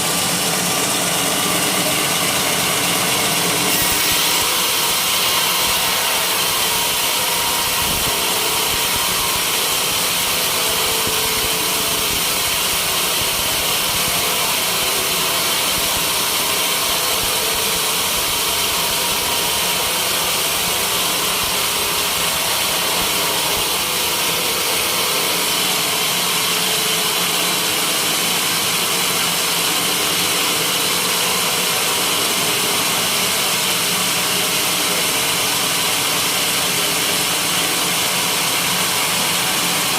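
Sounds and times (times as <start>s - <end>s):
sawmill sawing wood: 0.0s - 39.9s.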